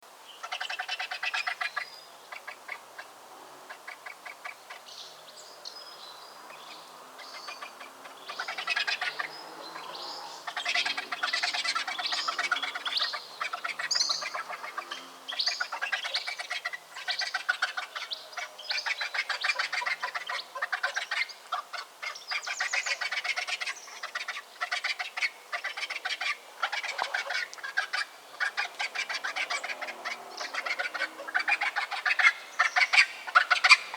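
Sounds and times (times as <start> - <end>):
vultures chattering and squealing: 7.4 - 18.1, 18.8 - 33.9.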